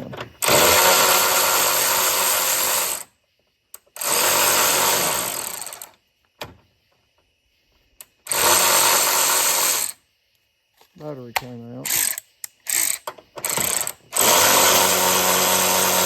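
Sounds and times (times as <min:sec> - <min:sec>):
cordless ratchet running: 0:11.9 - 0:16.0.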